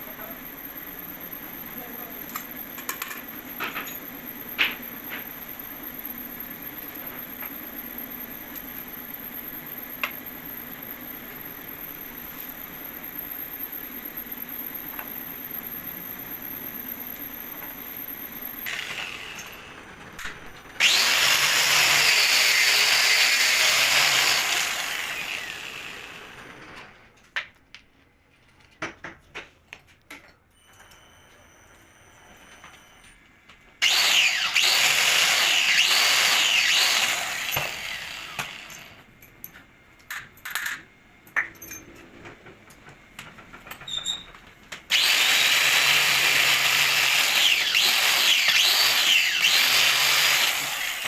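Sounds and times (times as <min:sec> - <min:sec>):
power tool running: 0:18.6 - 0:26.8, 0:33.8 - 0:39.0, 0:44.9 - 0:51.0.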